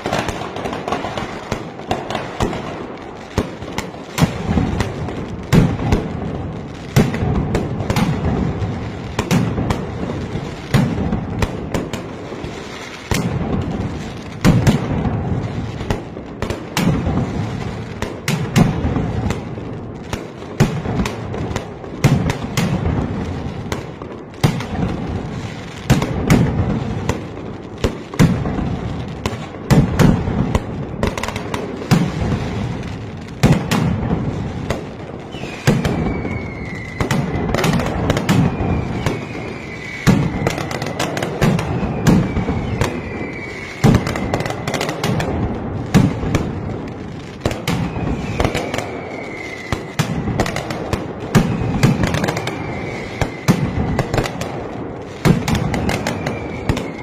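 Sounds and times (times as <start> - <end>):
firecrackers banging: 0.0 - 57.0
falling whistles: 35.3 - 44.9, 47.7 - 50.0, 51.4 - 54.3, 55.5 - 57.0.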